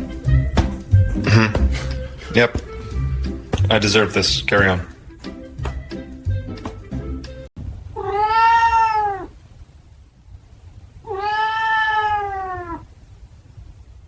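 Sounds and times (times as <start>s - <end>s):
cat meowing: 7.9s - 9.4s, 11.0s - 12.9s.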